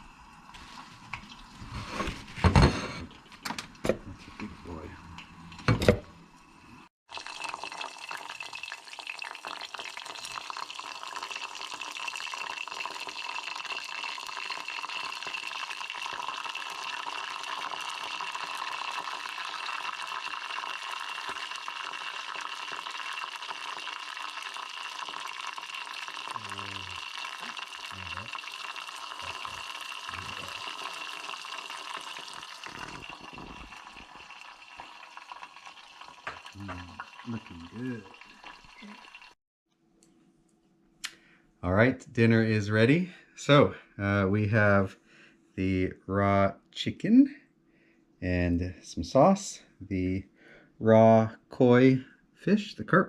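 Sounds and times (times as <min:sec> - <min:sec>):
larvae sizzling in hot oil: 0:07.1 - 0:26.4, 0:27.0 - 0:33.1.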